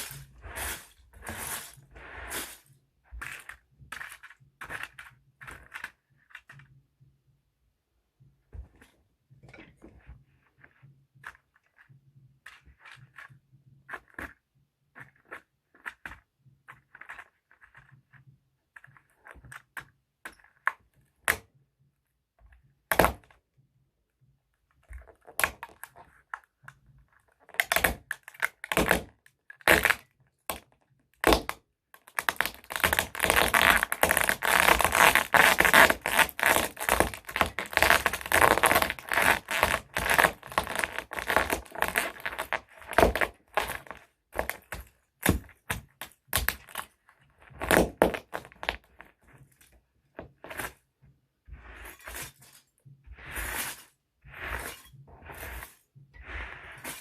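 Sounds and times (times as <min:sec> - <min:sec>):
plastic crackling and snapping: 0:24.9 - 0:49.2.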